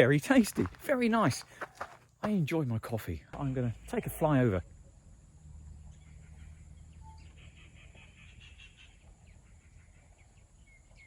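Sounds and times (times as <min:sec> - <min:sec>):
birds chattering: 0:05.7 - 0:11.0.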